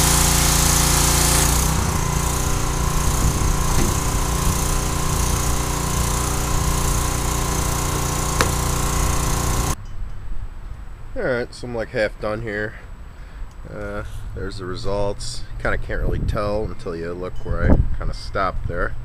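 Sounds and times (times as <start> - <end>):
pressure washer engine running: 0.0 - 9.8
spray jet hissing on boards: 0.0 - 9.8.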